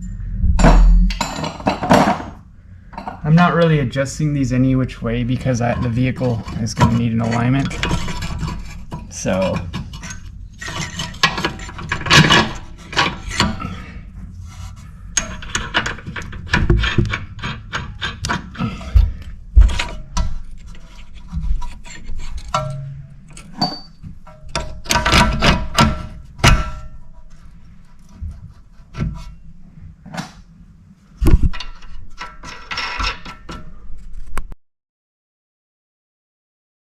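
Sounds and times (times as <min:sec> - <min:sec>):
wrenches clanking on metal: 0:05.2 - 0:13.9, 0:15.1 - 0:27.0, 0:31.5 - 0:33.7.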